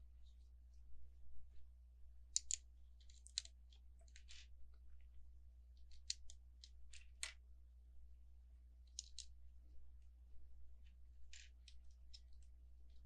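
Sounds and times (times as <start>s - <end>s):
plastic toy bricks clicking: 2.4s - 3.5s, 8.9s - 9.3s.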